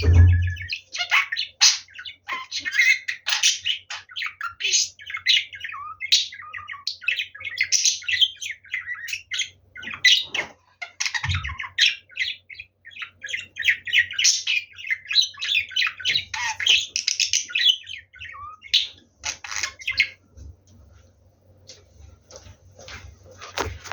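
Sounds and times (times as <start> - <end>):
low thump: 0.0 - 0.7
budgerigar chattering and warbling: 0.0 - 20.2.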